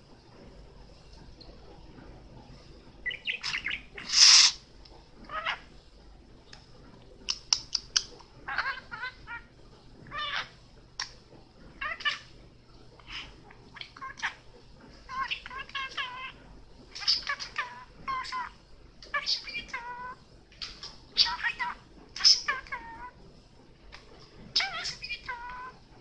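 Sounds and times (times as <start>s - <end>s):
budgerigar chirping: 3.1s - 4.6s.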